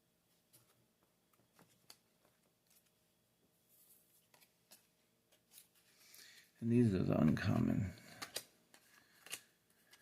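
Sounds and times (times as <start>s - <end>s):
trading cards clicking and rustling: 4.2s - 10.0s.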